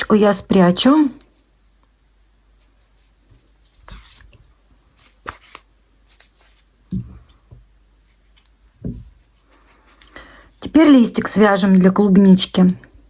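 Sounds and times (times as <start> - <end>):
rustle of handling yarn: 2.5 - 11.4
low thump: 8.8 - 9.2.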